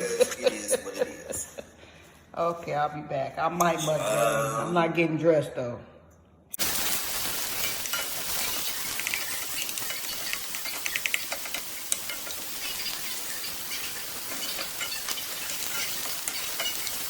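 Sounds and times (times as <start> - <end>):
food sizzling in a pan: 6.6 - 17.0.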